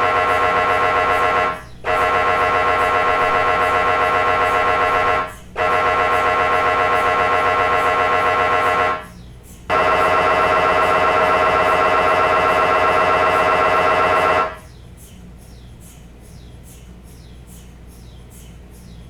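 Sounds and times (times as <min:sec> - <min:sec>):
mri scanner buzzing tone: 0:00.0 - 0:14.7
low hum with faint ticking: 0:00.0 - 0:19.0.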